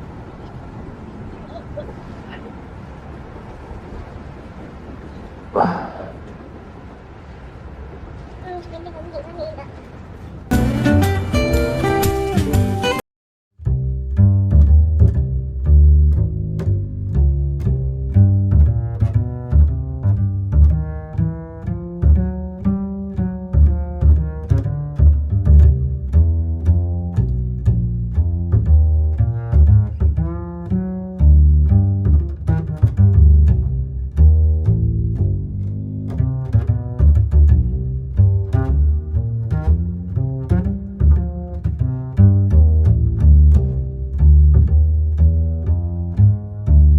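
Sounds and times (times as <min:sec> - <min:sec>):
bowed string melody: 0:10.5 - 0:13.0, 0:13.6 - 0:46.9
plucked double bass and cello: 0:10.5 - 0:13.0, 0:13.6 - 0:46.9.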